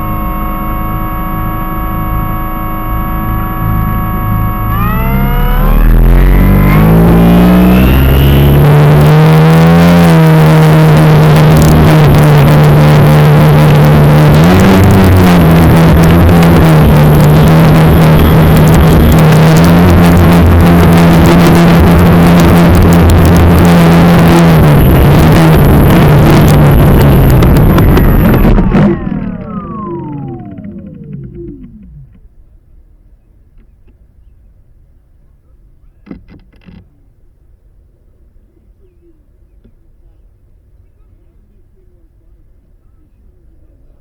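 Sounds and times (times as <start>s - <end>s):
model plane motor and propeller: 0.0s - 32.3s.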